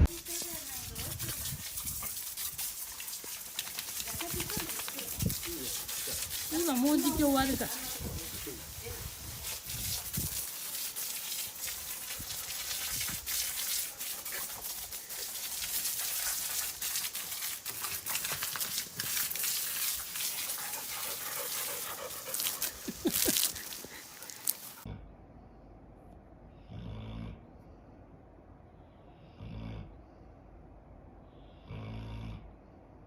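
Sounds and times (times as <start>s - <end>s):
dog panting hard: 0.3s - 10.5s, 13.3s - 17.1s, 17.7s - 24.9s.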